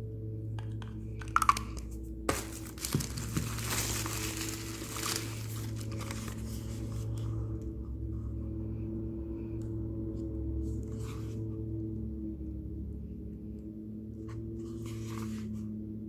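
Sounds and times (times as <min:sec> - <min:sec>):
plastic packaging clicks: 0:01.2 - 0:06.2
plastic crinkling and tearing: 0:02.3 - 0:06.9.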